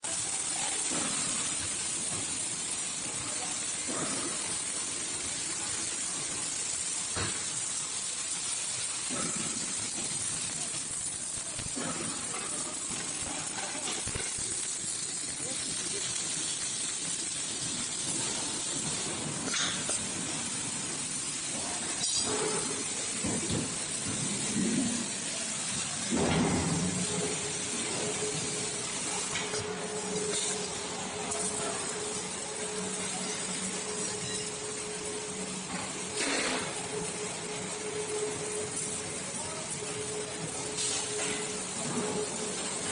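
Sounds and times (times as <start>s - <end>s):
welding machine hissing: 0.0s - 42.9s.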